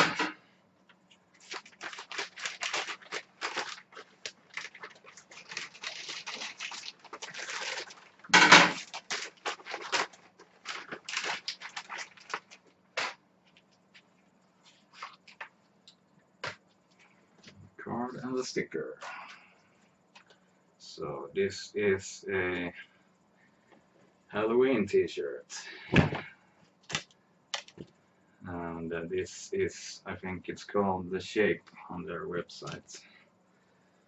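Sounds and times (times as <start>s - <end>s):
plastic bag rustling and crinkling: 1.3s - 15.6s.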